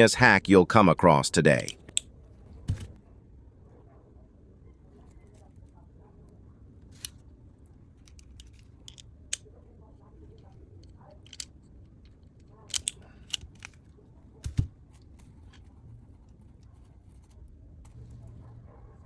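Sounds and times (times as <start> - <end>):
wire snipping clicks: 12.7 - 13.8.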